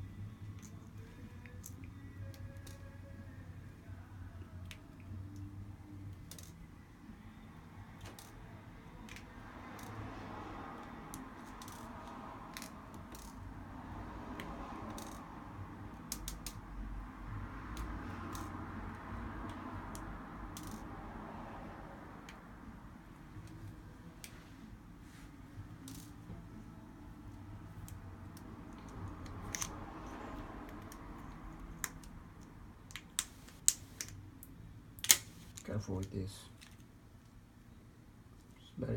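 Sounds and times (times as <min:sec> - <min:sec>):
hand tools tapping phone parts: 0:10.7 - 0:13.4, 0:14.2 - 0:16.6, 0:17.7 - 0:20.9, 0:27.7 - 0:34.2.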